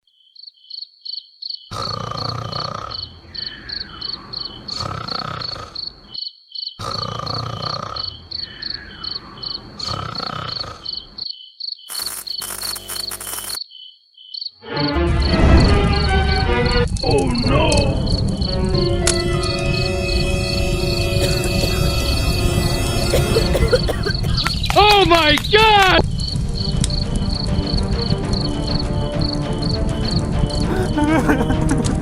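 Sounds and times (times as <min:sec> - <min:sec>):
glitchy buzzing noise: 0:11.9 - 0:13.6, 0:18.3 - 0:25.1
music: 0:14.6 - 0:25.2, 0:26.0 - 0:32.0
high-pitched chirping: 0:17.1 - 0:24.8.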